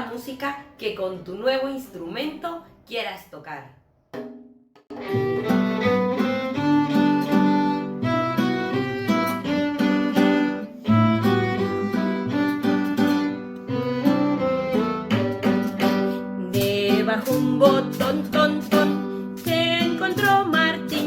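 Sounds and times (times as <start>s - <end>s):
violin melody: 4.9s - 16.2s
plucked guitar: 4.9s - 21.0s.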